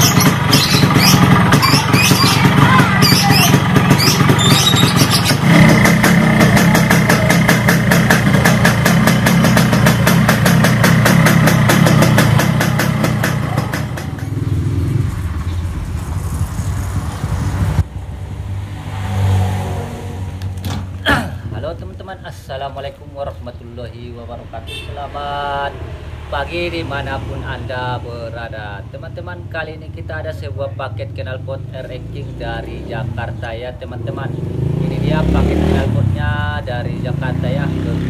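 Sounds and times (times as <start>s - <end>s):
two-stroke motorcycle engine: 0.0s - 17.8s.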